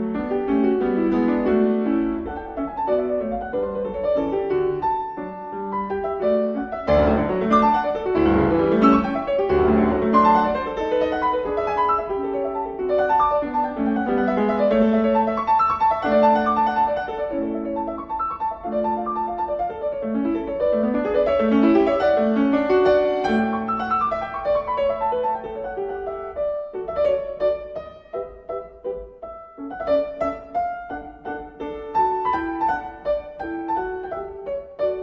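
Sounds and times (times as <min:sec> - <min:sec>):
solo piano music: 0:00.0 - 0:35.0.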